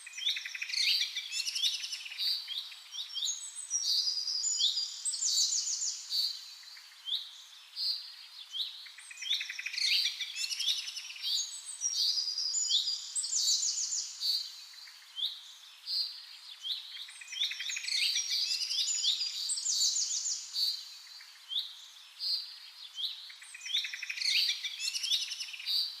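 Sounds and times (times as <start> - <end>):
songbirds chirping and trilling: 0.0 - 26.0.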